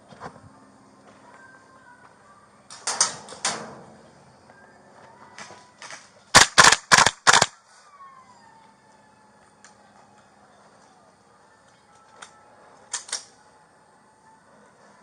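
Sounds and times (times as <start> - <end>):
airsoft gun shots: 6.3 - 7.6.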